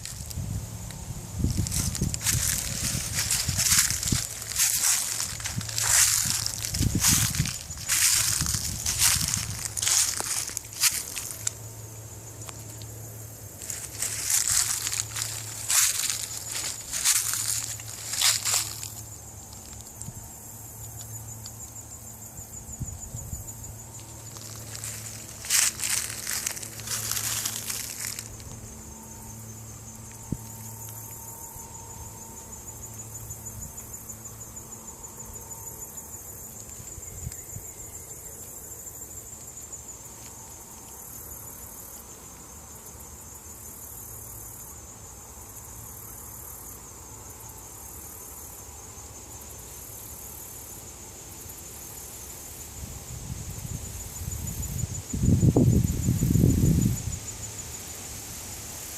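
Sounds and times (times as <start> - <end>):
loud crunching rustles: 0.0 - 11.7, 13.5 - 20.1, 23.7 - 31.4
insects trilling: 0.0 - 58.9.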